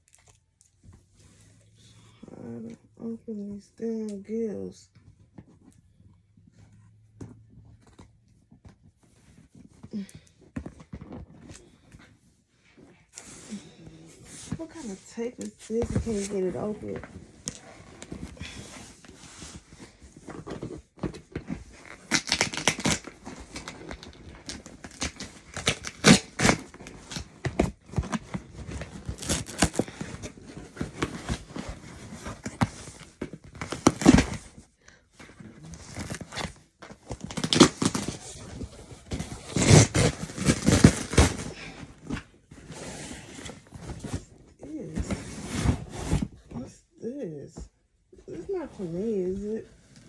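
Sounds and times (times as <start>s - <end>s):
tape ripping and rustling: 13.1s - 34.6s, 35.3s - 46.4s
cardboard box being torn open: 20.5s - 34.5s, 35.6s - 42.2s.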